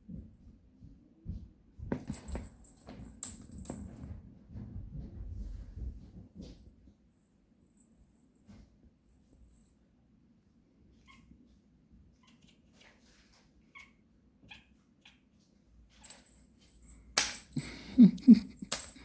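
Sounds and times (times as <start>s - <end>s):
kitten chirping: 12.2s - 13.0s, 13.7s - 15.3s.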